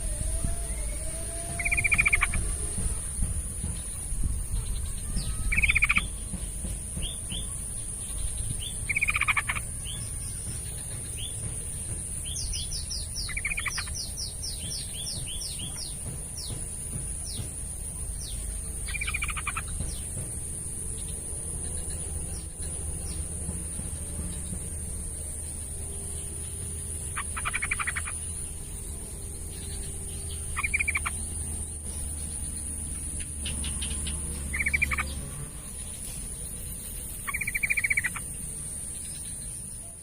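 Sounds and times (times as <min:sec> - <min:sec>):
high falling bird notes: 0:00.0 - 0:03.2
bird chattering calls: 0:00.0 - 0:40.0.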